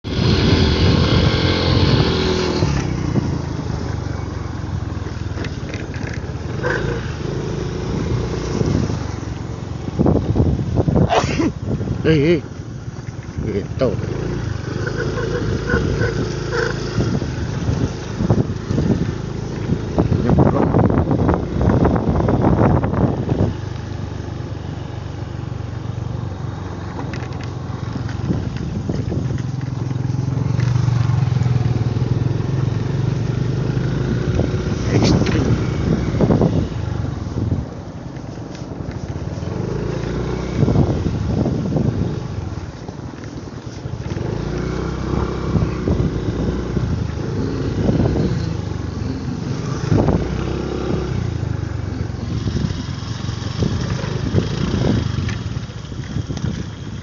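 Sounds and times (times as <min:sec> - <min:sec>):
engine running: 0:00.0 - 0:57.0
motor engine running: 0:13.4 - 0:21.0.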